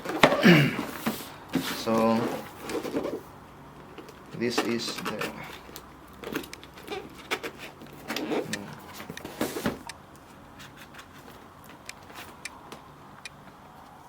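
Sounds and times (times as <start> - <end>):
handling clicks and taps: 3.8 - 14.0.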